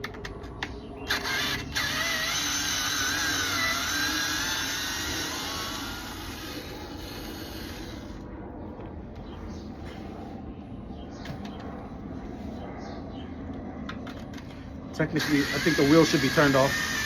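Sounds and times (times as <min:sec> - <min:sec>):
power drill whining: 0:01.1 - 0:08.2, 0:15.0 - 0:17.0.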